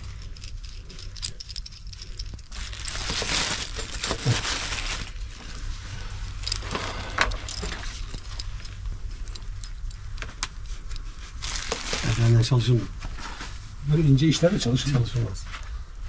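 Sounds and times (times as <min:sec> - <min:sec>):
metal screws clinking and rattling: 0:00.0 - 0:05.4, 0:06.3 - 0:10.2
rustling and scraping: 0:00.0 - 0:16.0.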